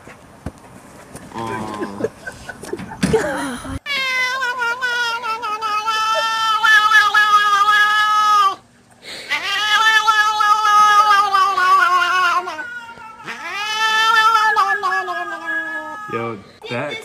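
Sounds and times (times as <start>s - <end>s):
cat yowling: 3.8s - 8.6s, 9.3s - 16.4s.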